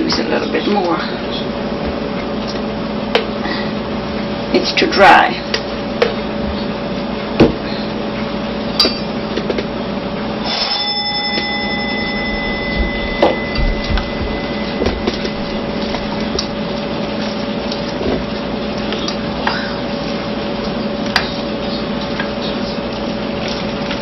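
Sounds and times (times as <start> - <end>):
steady low hum: 0.0 - 24.0
bell-like ring: 10.4 - 16.2.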